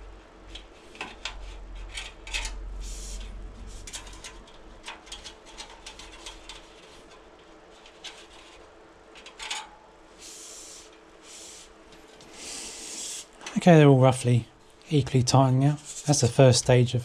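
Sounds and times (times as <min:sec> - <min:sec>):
short hisses: 0:10.2 - 0:13.4.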